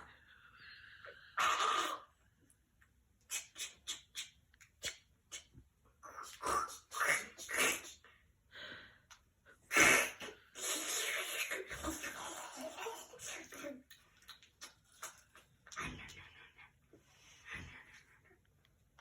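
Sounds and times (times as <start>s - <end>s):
child making breathy mouth sounds: 3.3s - 8.0s.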